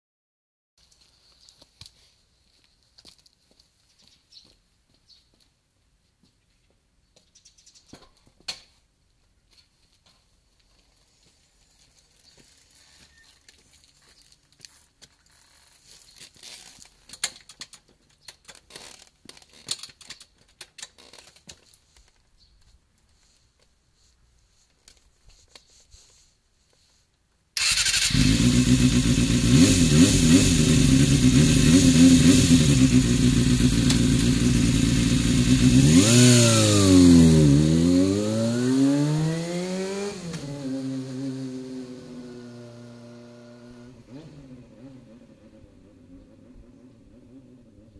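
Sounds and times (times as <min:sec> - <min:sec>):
motorcycle engine idling: 0:27.6 - 0:36.0.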